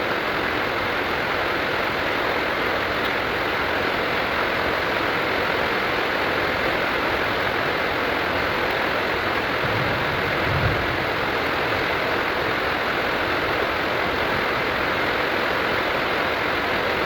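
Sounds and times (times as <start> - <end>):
steady rushing noise: 6.9 - 17.0
low thump: 9.6 - 11.8.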